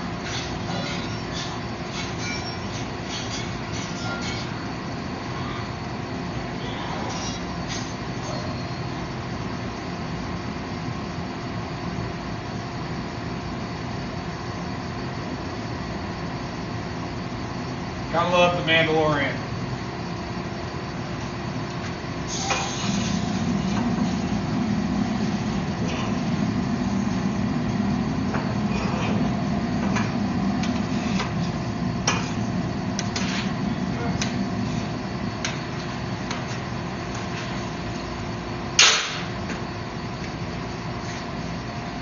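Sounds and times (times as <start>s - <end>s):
machine hum: 0.0s - 42.0s.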